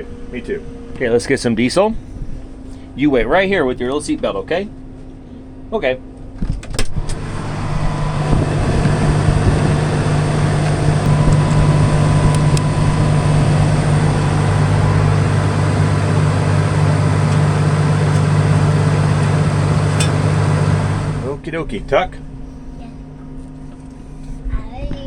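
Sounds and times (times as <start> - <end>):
diesel engine idling: 7.0 - 21.4.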